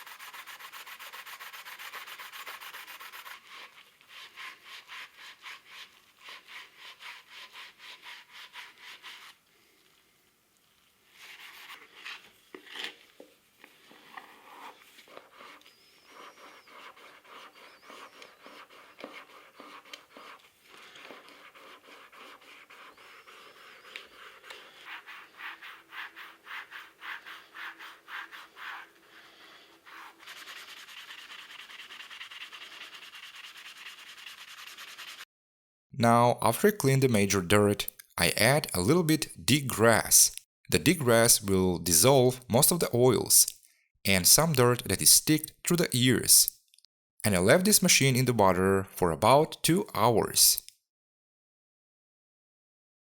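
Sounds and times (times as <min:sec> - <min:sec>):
sponge scrubbing metal: 0:00.0 - 0:09.4, 0:13.8 - 0:35.2.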